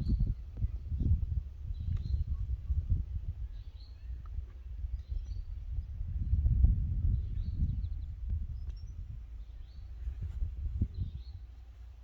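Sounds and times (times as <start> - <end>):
wind rumble on microphone: 0.0 - 12.0.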